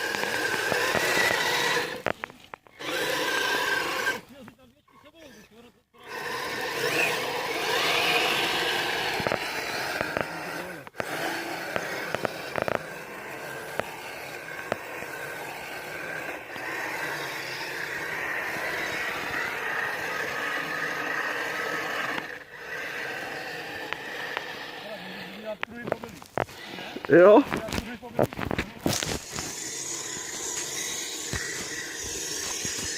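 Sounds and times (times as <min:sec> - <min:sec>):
electric motor whine: 0:00.0 - 0:04.4, 0:06.0 - 0:27.8, 0:28.8 - 0:32.9
tracks rushing and scraping: 0:00.0 - 0:04.5, 0:06.0 - 0:32.9.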